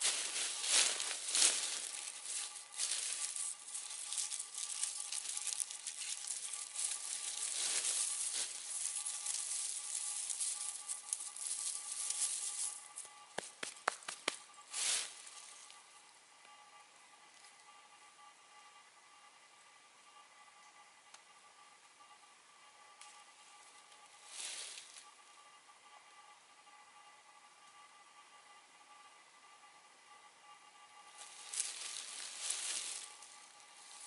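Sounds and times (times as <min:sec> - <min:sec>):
campfire hissing and crackling: 0:00.0 - 0:12.9.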